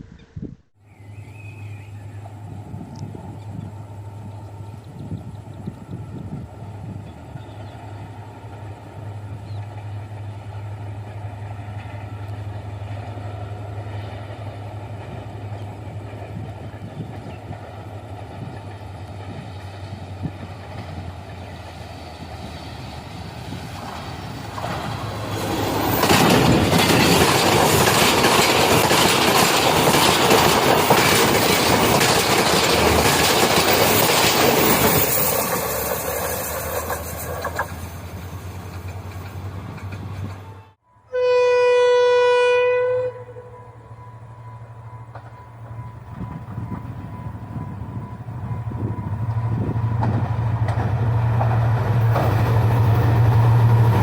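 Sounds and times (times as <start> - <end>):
train passing at speed: 0.9 - 54.0
locomotive horn blast: 40.3 - 45.2.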